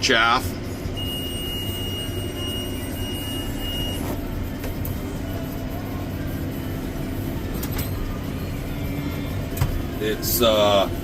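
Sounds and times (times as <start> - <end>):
thin high whine: 1.0 - 4.4.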